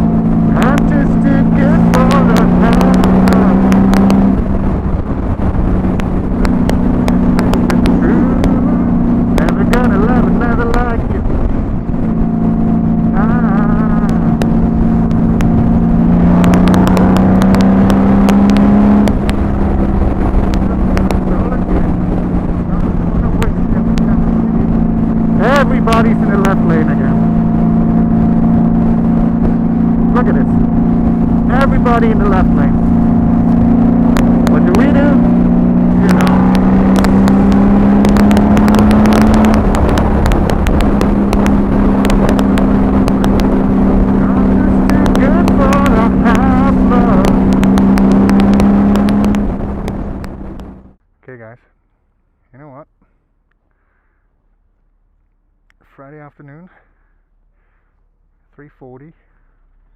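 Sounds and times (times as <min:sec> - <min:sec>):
motorcycle engine running: 0:00.0 - 0:51.0
sharp clicks on microphone: 0:00.6 - 0:04.8, 0:05.8 - 0:08.6, 0:16.4 - 0:22.0, 0:35.9 - 0:50.8.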